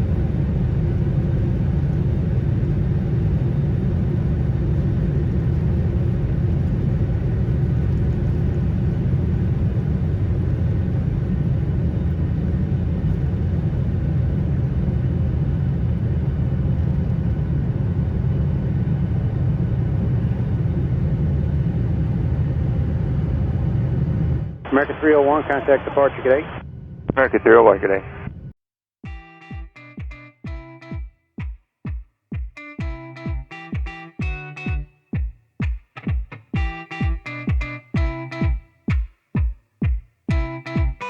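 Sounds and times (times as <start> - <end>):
jet engine low rumble: 0.0 - 28.6, 36.5 - 38.7.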